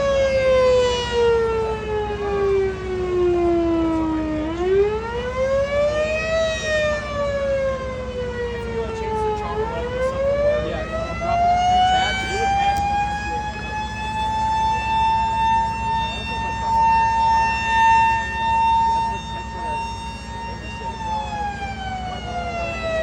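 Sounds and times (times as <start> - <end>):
wailing siren: 0.0 - 23.0.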